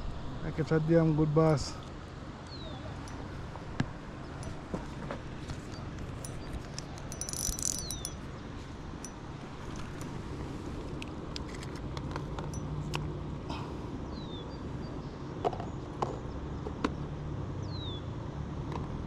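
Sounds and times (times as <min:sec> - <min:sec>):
sharp clicks and knocks: 0:03.8 - 0:08.2.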